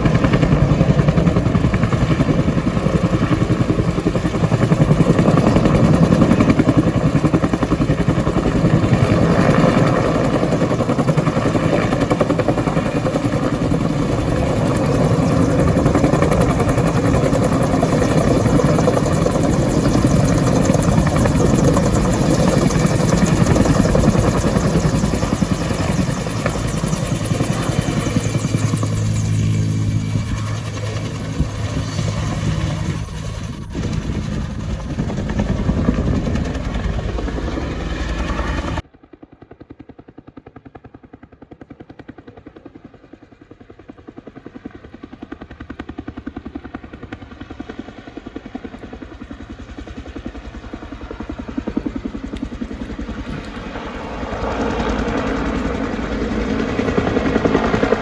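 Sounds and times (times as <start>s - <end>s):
helicopter rotor beating: 0.0s - 58.0s.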